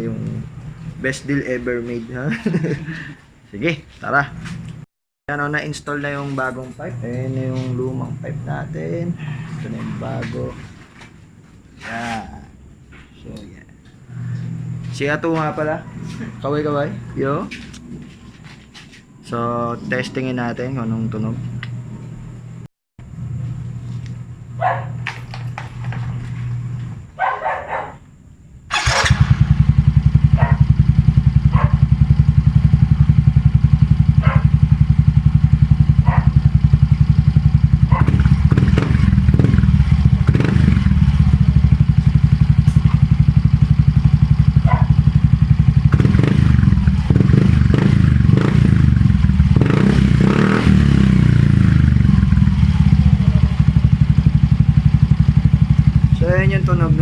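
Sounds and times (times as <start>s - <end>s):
scooter engine revving: 28.7s - 57.0s
scooter engine starting: 28.7s - 57.0s.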